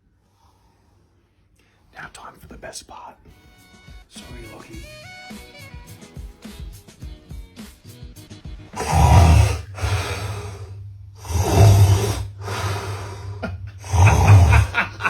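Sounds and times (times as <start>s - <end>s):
man snoring loudly: 8.8s - 15.0s.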